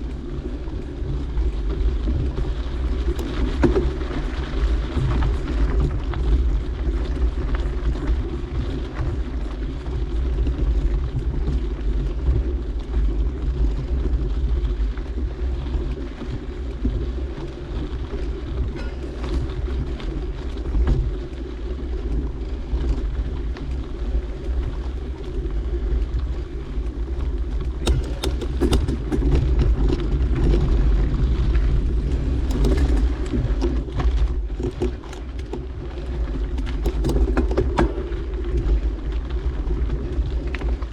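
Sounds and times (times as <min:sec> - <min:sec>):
bike tyres rolling on dirt: 0:00.0 - 0:40.9
wind rumbling on microphone: 0:00.0 - 0:40.9
bike clattering and knocking: 0:18.7 - 0:19.7, 0:27.8 - 0:30.6, 0:32.3 - 0:38.6.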